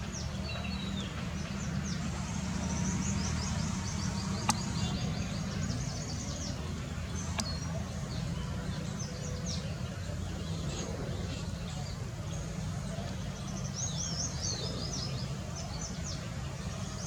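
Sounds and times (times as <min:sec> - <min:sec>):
small birds chirping: 0:00.0 - 0:17.0
steady low hum: 0:00.0 - 0:17.0
sharp clicks: 0:04.2 - 0:05.0, 0:07.3 - 0:07.6.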